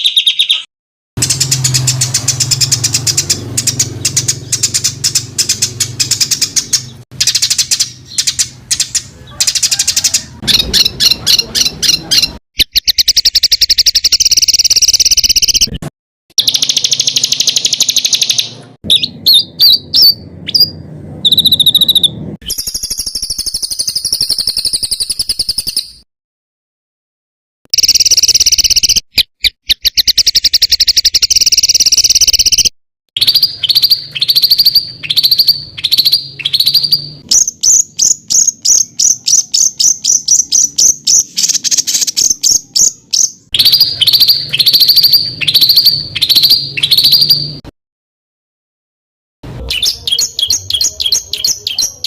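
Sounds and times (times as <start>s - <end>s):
songbird harsh rapid calls: 1.2s - 15.7s, 33.2s - 47.4s.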